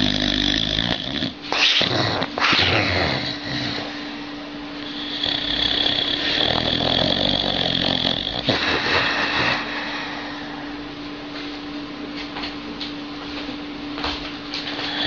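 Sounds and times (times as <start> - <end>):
dog snoring: 0.0 - 10.8, 14.6 - 15.0
steady hum: 0.0 - 15.0.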